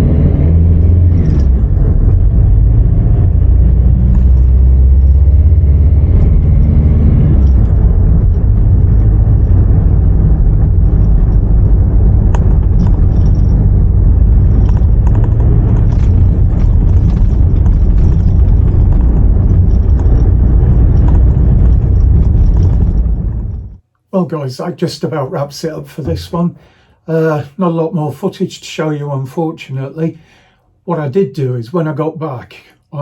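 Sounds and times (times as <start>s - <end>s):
diesel engine rumble: 0.0s - 23.8s
road noise: 0.0s - 23.8s.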